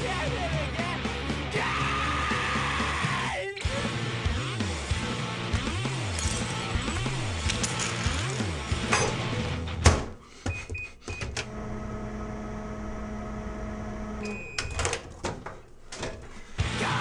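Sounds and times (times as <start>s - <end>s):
microwave beep: 10.5s - 11.6s, 14.1s - 14.9s
microwave humming: 11.1s - 16.0s
keypad beeps: 14.2s - 14.8s.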